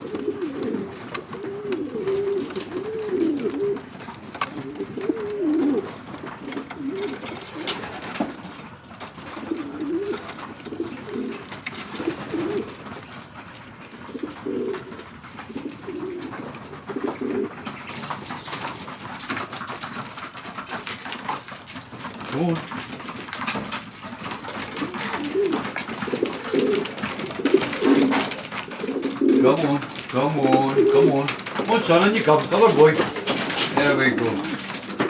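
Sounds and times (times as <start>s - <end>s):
pigeons cooing: 0.0s - 35.0s.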